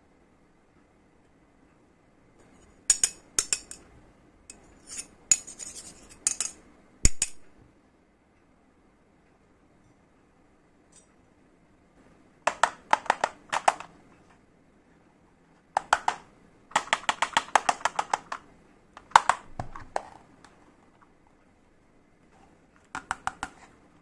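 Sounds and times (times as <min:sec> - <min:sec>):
toy pieces tapping and clicking: 0:12.5 - 0:14.0, 0:15.8 - 0:20.2.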